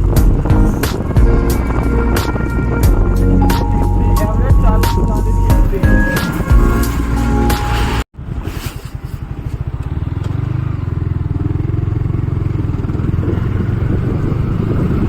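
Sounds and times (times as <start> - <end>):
music snippet: 0.0 - 8.0
motorcycle engine throbbing: 0.0 - 8.1.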